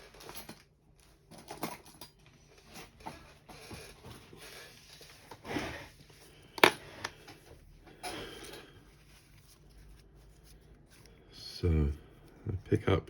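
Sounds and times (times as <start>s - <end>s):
tools rustling on work surface: 0.0s - 10.0s.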